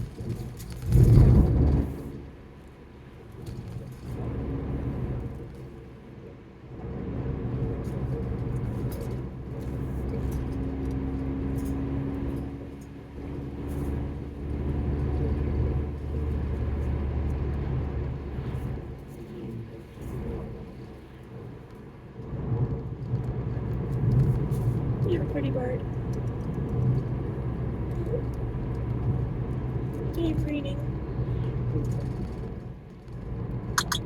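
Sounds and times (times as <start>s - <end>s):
car engine and road noise: 0.0s - 34.0s.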